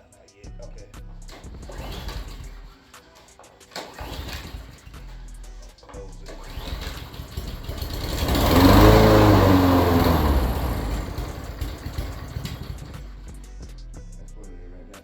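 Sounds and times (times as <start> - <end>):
lawnmower engine revving: 1.2 - 13.6.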